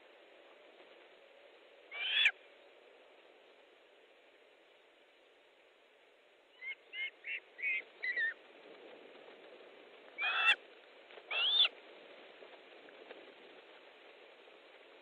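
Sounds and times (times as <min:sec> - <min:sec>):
osprey whistled calls: 0:01.9 - 0:02.4, 0:06.6 - 0:08.4, 0:10.2 - 0:10.6, 0:11.3 - 0:11.7.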